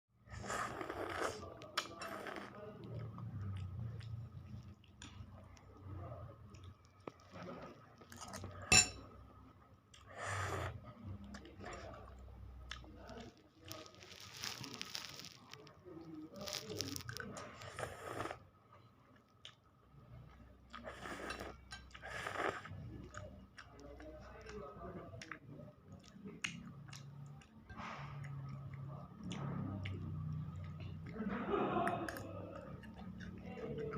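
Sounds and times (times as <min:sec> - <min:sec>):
utensils clinking against bowl: 0:08.7 - 0:09.1
wet mouth clicks while chewing: 0:26.0 - 0:27.6.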